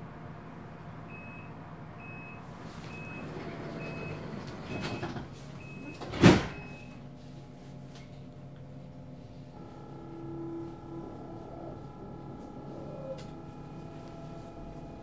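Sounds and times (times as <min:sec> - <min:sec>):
door warning beeps: 0:01.1 - 0:07.0
sliding doors shutting: 0:02.4 - 0:07.0.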